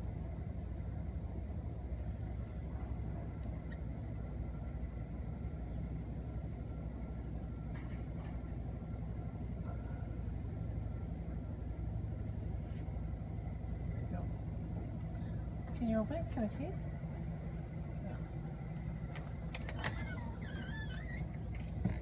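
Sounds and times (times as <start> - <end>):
light clicks: 0.0 - 8.7, 18.7 - 22.0
low engine rumble: 0.0 - 22.0.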